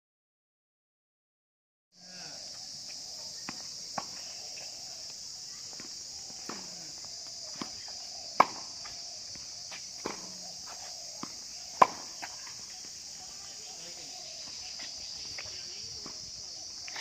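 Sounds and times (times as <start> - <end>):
insects droning: 2.0 - 17.0
tennis ball hits: 6.4 - 6.8, 8.4 - 8.8, 10.0 - 12.3.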